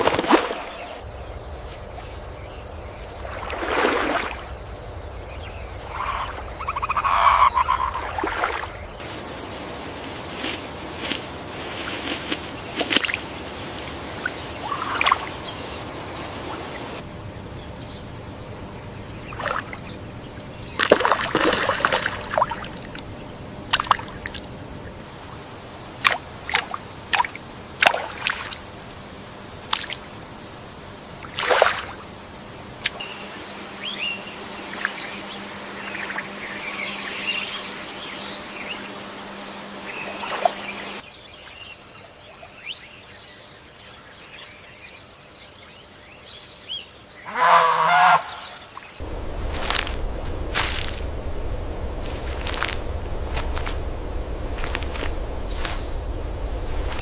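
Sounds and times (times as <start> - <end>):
steady hiss: 9.0 - 21.2, 21.8 - 41.0, 48.9 - 57.0.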